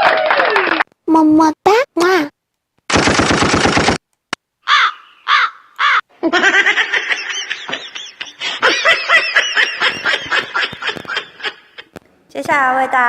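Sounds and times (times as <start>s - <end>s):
canned laughter: 6.2s - 11.9s.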